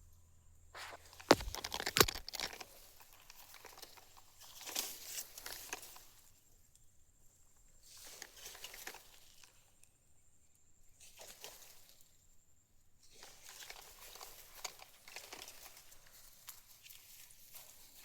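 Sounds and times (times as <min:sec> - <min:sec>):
faint crackling and rustling: 0:00.8 - 0:10.0, 0:13.0 - 0:18.0.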